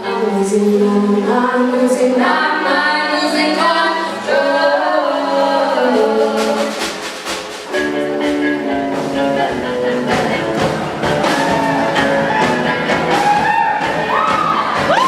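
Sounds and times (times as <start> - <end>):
rock band playing live: 5.8 - 15.0.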